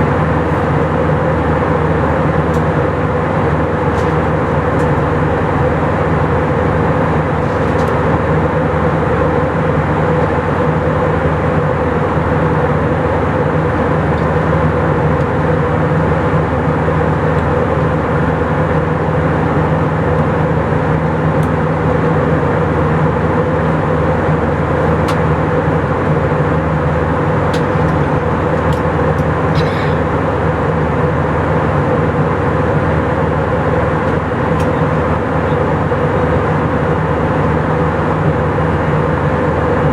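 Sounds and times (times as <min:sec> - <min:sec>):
airplane cabin engine roar: 0:00.0 - 0:39.9.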